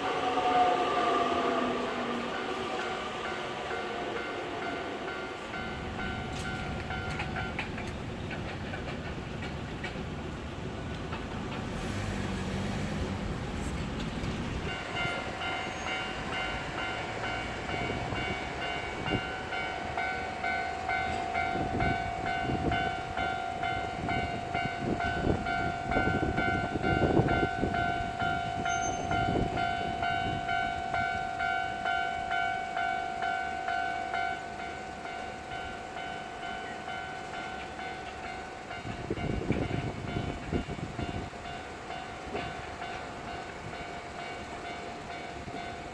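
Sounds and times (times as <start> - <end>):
train passing rumble: 0.0 - 45.9
level crossing bell ringing: 14.6 - 38.5.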